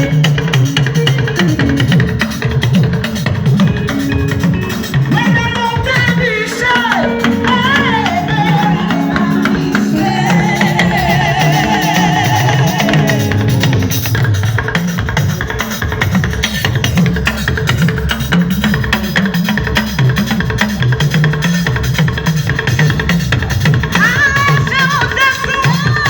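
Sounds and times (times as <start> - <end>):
wavering sliding lead melody: 0.0 - 14.8
gospel band music: 0.0 - 26.0.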